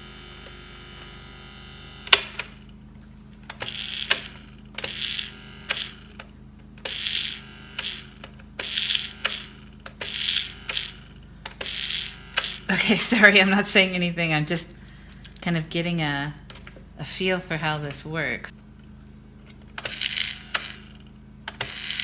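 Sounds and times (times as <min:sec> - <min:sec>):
low steady hum: 0:00.0 - 0:22.0
toy mechanism clicking: 0:03.5 - 0:12.7, 0:19.8 - 0:22.0.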